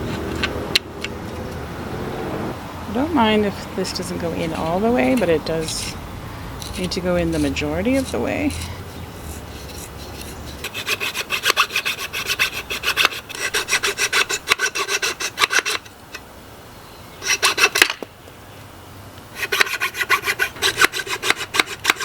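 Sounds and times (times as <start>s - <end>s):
hand tool rasping on wood: 4.4s - 6.0s, 6.6s - 15.8s, 19.4s - 22.0s.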